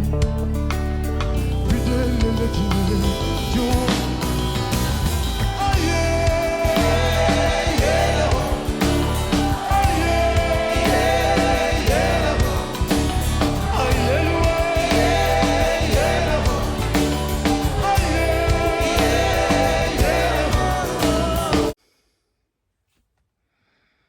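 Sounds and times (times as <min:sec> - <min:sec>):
song with sung vocals and band: 0:00.0 - 0:21.8.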